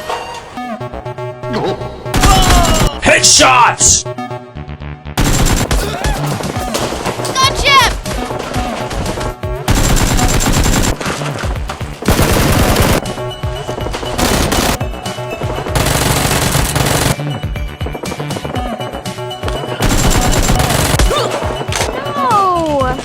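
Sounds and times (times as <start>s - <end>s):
background music: 0.0s - 23.0s
automatic gunfire bursts: 5.2s - 6.4s, 9.0s - 11.1s, 12.1s - 13.0s, 15.8s - 17.2s.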